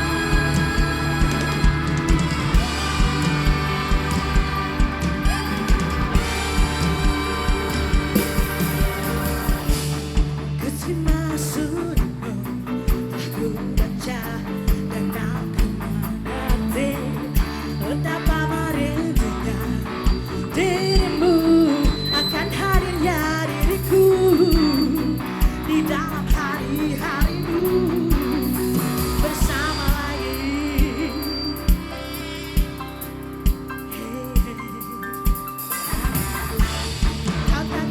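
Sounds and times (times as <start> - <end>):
person singing: 0.0 - 10.0, 10.6 - 32.0, 33.8 - 35.5, 37.3 - 37.9
drum beat: 0.0 - 10.4
guitar: 0.0 - 37.9.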